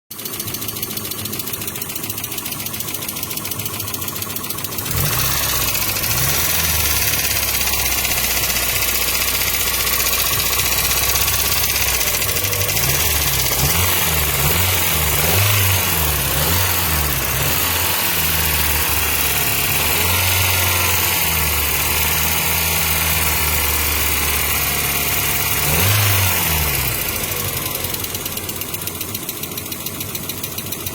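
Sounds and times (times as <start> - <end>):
engine ticking clatter: 0.1 - 30.9
deeper engine drone: 4.8 - 29.0.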